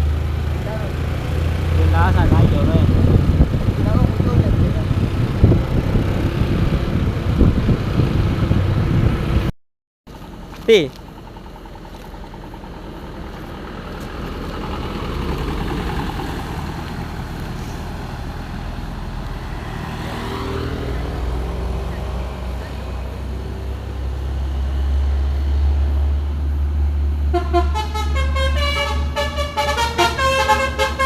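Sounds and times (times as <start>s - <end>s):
truck diesel engine rumble: 0.0s - 9.5s, 10.1s - 31.0s
multi-note horn tune: 27.3s - 31.0s.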